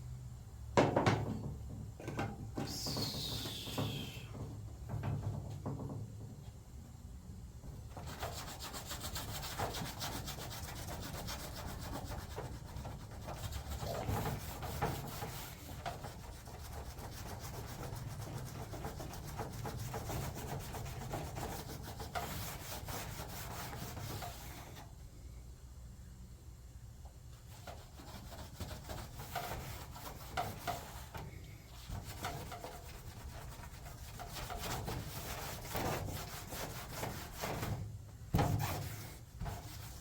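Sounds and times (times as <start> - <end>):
abrasive scraping on metal panel: 2.1 - 4.5, 8.0 - 24.8, 27.5 - 40.0.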